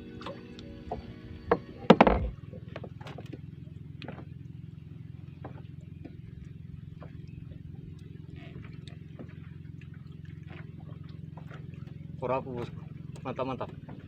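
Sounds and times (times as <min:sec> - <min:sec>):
background music: 0:00.0 - 0:02.3
boat engine idling: 0:00.0 - 0:14.0.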